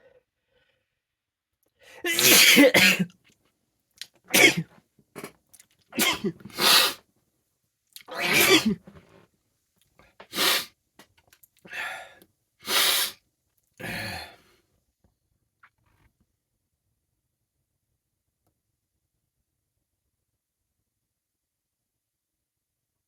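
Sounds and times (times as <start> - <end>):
man sneezing: 2.0 - 3.1, 4.3 - 4.6, 6.0 - 7.0, 8.1 - 8.8.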